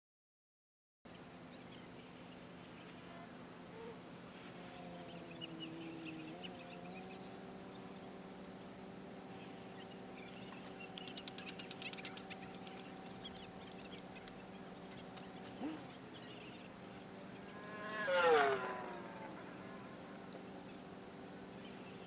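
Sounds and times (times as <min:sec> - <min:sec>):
sharp metallic clicks: 0:11.0 - 0:14.4.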